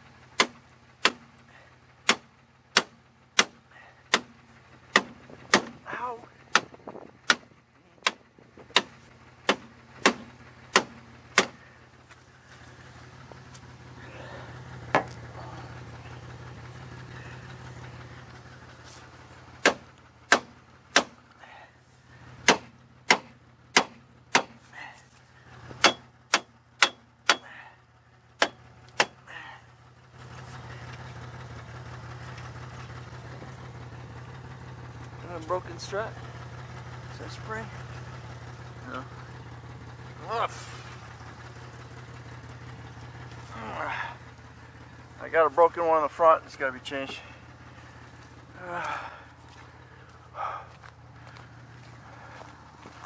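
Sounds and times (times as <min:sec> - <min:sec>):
car engine idling: 0:00.0 - 0:53.0
sledgehammer striking metal drum: 0:02.1 - 0:05.8, 0:06.5 - 0:11.6, 0:19.6 - 0:21.3, 0:22.4 - 0:24.6, 0:25.8 - 0:27.5.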